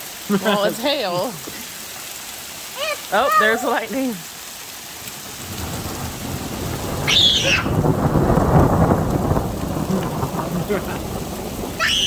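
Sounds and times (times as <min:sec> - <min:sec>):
hail falling: 0:00.0 - 0:12.0
high-pitched cry: 0:02.8 - 0:03.6, 0:07.1 - 0:07.8, 0:11.8 - 0:12.0
thunder rumbling: 0:05.2 - 0:12.0.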